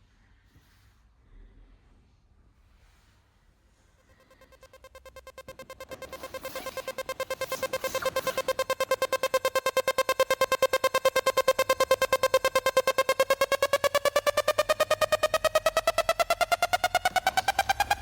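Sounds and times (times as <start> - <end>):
electronic pulsing beeps: 4.0 - 18.0.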